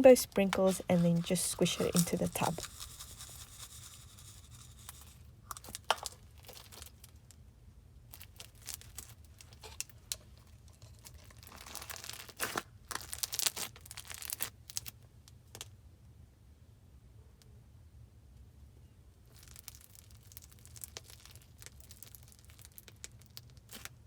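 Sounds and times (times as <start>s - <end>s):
crunchy slime squished by hand: 0.0s - 7.3s, 8.1s - 10.1s, 10.9s - 15.0s, 19.3s - 24.0s.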